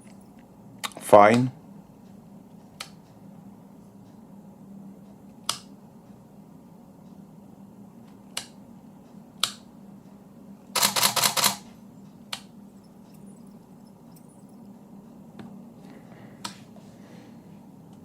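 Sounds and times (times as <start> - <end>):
faint low hum: 0.0 - 18.0
camera shutter firing: 10.8 - 11.6.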